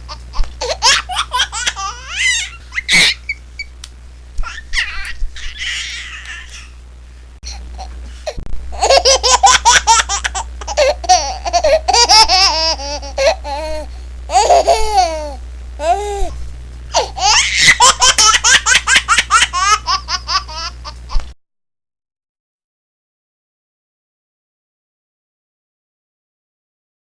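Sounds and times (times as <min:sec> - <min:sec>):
baby giggling: 0:00.1 - 0:03.7, 0:04.4 - 0:06.8, 0:08.8 - 0:16.3, 0:17.0 - 0:21.2
baby squealing: 0:00.6 - 0:03.7, 0:04.4 - 0:06.8, 0:17.0 - 0:18.7.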